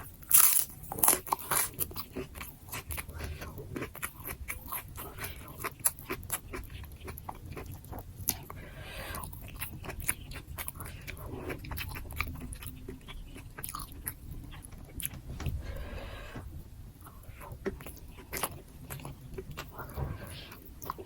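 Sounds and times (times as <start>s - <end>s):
close-up chewing: 0.0s - 21.0s.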